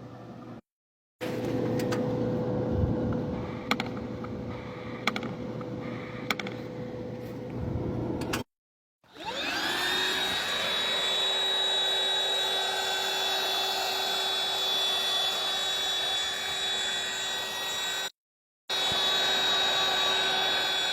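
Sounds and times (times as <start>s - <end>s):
electric motor whining: 9.1s - 18.1s, 18.7s - 20.9s.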